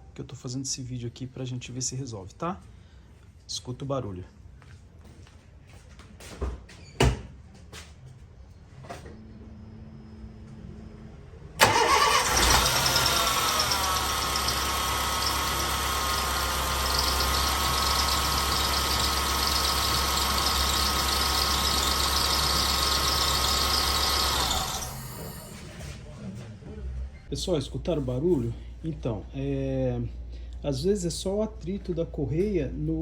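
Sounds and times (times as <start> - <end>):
car engine starting and idling: 11.6 - 25.8.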